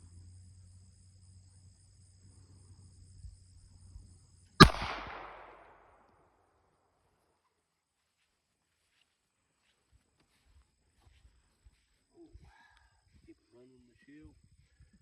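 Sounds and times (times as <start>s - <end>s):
insects chirping: 0.0s - 6.1s, 9.2s - 15.0s
pistol shot with echo: 4.6s - 6.0s.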